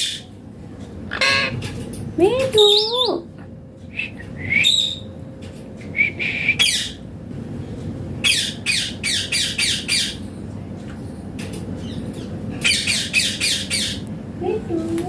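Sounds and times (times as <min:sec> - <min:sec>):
parakeet screeching: 0:01.1 - 0:01.6, 0:06.6 - 0:07.0, 0:08.2 - 0:10.2, 0:12.6 - 0:14.0.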